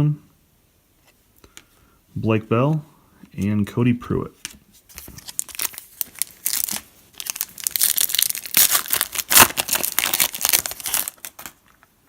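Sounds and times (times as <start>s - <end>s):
foil wrapper crinkling and tearing: 5.0s - 11.9s.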